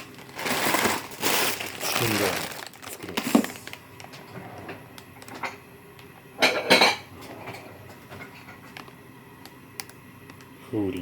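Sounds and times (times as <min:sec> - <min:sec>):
dishes clattering: 0:06.4 - 0:08.7.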